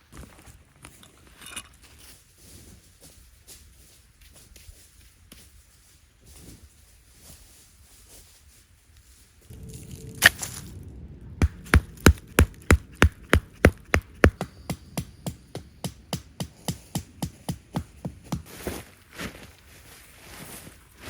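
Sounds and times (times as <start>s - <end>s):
heavy hammering strikes: 11.4s - 18.5s.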